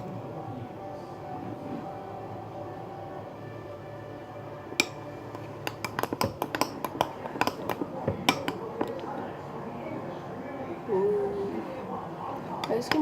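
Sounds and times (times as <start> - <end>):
spoon clinking against bowl: 4.8 - 9.0, 12.6 - 13.0.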